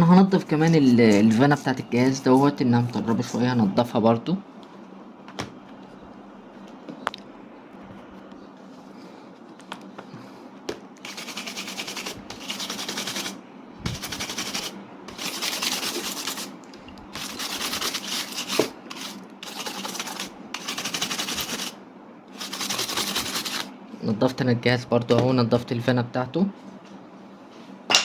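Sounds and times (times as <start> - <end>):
scratchy scrubbing of fan: 0.5 - 3.3, 11.0 - 23.8.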